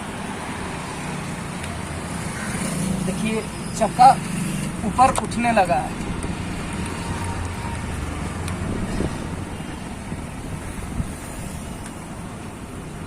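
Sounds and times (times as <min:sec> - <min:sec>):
low rumble of traffic: 0:00.0 - 0:13.0
wind on microphone: 0:06.0 - 0:12.2.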